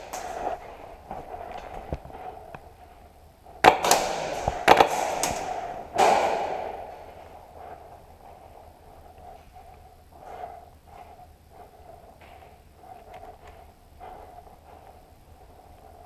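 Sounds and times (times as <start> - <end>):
airsoft gun shots echoing: 3.6 - 7.1.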